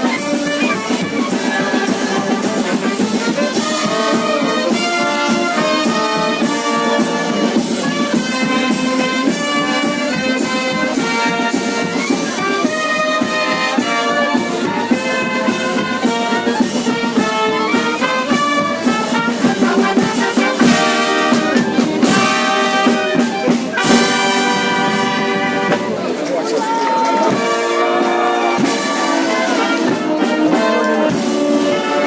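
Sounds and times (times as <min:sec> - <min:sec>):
brass band playing: 0:00.0 - 0:32.0.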